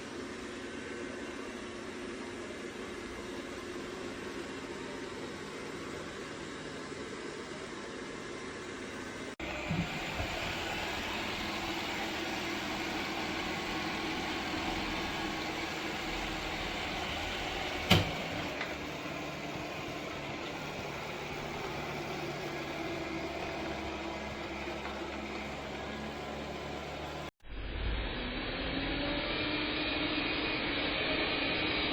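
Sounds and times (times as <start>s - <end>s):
robot vacuum whirring hum: 9.4s - 31.9s.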